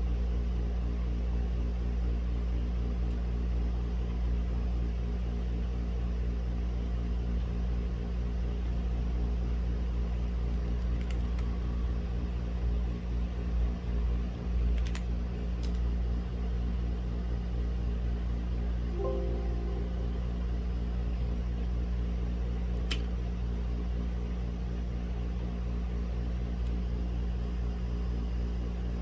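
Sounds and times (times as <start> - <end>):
low room hum: 0.0 - 29.0
mechanical keyboard keystrokes: 14.8 - 15.8
short faint tone: 18.9 - 20.6.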